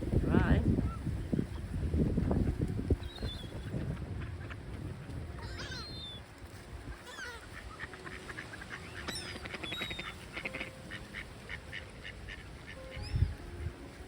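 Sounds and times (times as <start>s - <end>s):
wind rumble on microphone: 0.0s - 8.1s, 12.2s - 14.0s
gulls calling: 0.0s - 14.0s.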